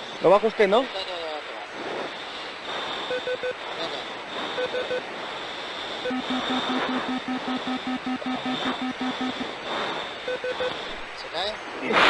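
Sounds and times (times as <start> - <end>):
cockpit whine and hiss: 0.0 - 12.0
short low electronic beeps: 6.0 - 9.5, 10.2 - 10.8.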